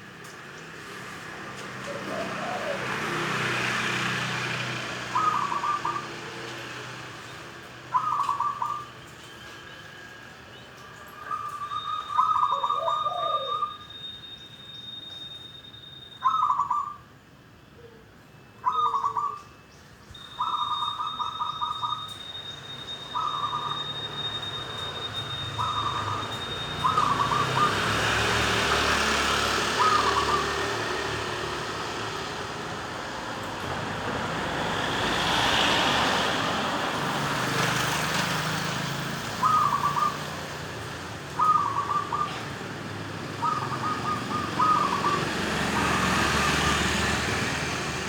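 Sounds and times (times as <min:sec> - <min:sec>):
passing traffic rumble: 0:00.0 - 0:48.0
dove cooing: 0:01.8 - 0:03.4, 0:05.1 - 0:06.5, 0:07.9 - 0:08.9, 0:11.2 - 0:13.8, 0:18.6 - 0:19.4, 0:25.5 - 0:31.6, 0:39.3 - 0:47.3.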